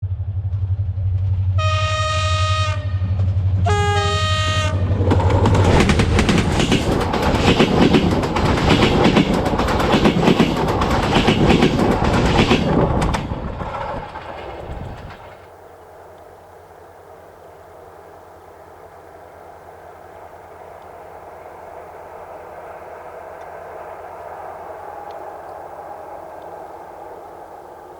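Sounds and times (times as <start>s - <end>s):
train engine rumble: 0.0s - 27.9s
train horn: 1.6s - 5.3s
wheels clacking over rail joints: 4.9s - 15.7s.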